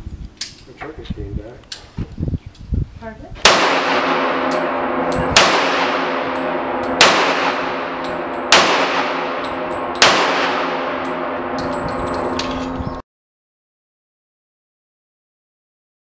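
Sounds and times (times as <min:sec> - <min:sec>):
handgun shots with ringing echo: 0:03.4 - 0:12.6.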